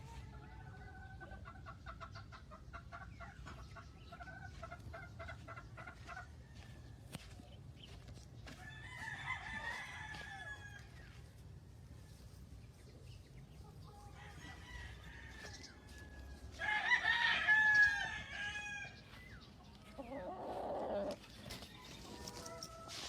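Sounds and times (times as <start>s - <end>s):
chickens clucking: 0.0s - 23.0s
rooster crowing: 8.6s - 10.9s, 14.2s - 19.0s.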